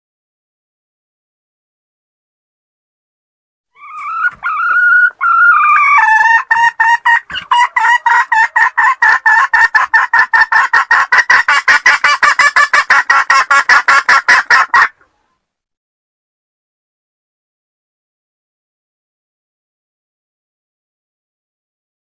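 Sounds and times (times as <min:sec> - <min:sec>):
hen calling and clucking: 0:03.8 - 0:15.5.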